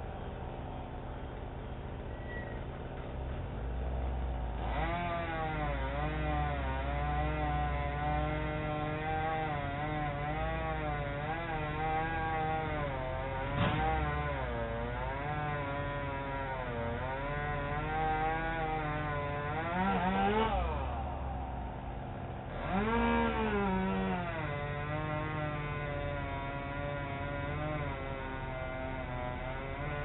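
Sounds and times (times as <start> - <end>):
chainsaw cutting: 4.0 - 30.0.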